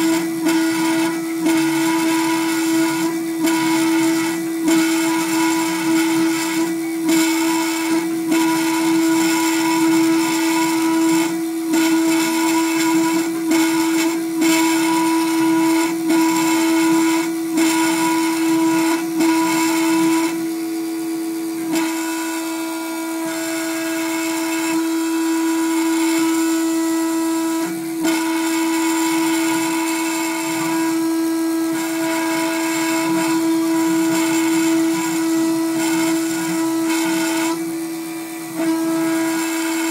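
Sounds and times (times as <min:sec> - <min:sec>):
engraving machine spindle whine: 0:00.0 - 0:39.9.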